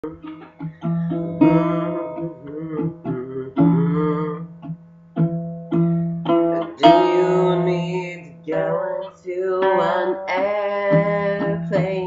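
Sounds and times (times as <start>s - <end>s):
acoustic guitar picking and strumming: 0.0s - 12.0s.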